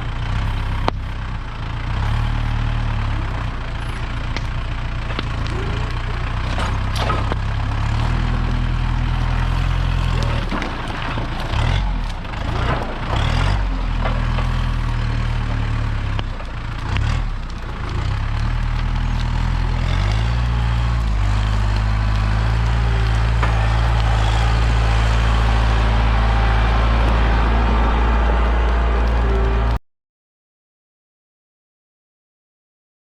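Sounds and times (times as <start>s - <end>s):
tractor engine under load: 0.0s - 29.8s.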